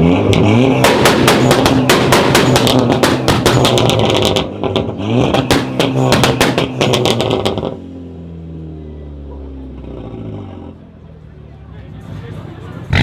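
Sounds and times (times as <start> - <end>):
sports car engine revving: 0.0 - 11.2, 11.9 - 13.0
exhaust pops and crackles: 0.2 - 7.8.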